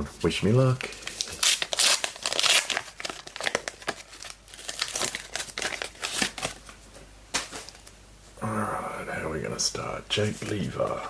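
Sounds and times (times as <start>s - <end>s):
wrapper tearing and crinkling: 1.0s - 6.7s.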